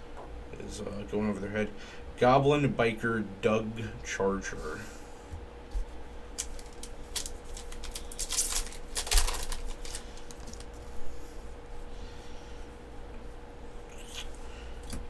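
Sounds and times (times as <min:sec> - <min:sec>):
cards flipped by hand: 0:06.4 - 0:10.7.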